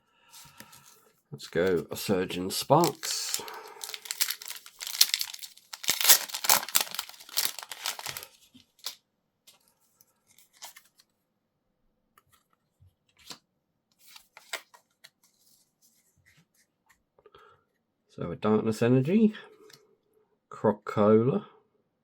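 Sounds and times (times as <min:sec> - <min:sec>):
cards rustling and tapping: 0:02.7 - 0:09.0, 0:10.4 - 0:11.0, 0:14.0 - 0:15.4
foil pack tearing: 0:02.8 - 0:09.0.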